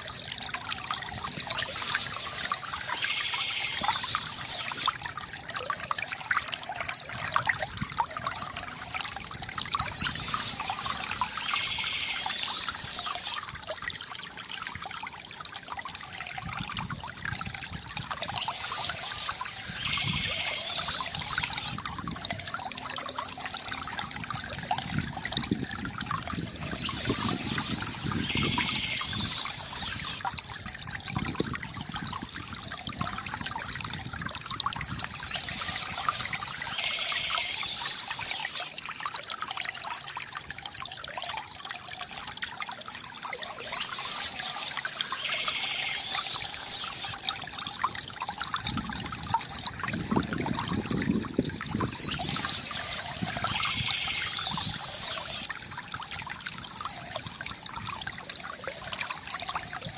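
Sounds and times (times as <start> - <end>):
stream trickling: 0.0 - 59.9.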